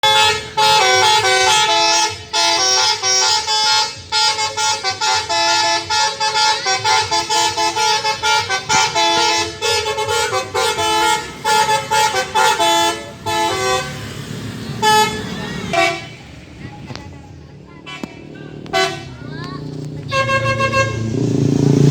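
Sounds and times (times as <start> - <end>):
multi-trumpet horn playing tune: 0.0 - 14.0, 14.8 - 16.2, 20.1 - 21.2.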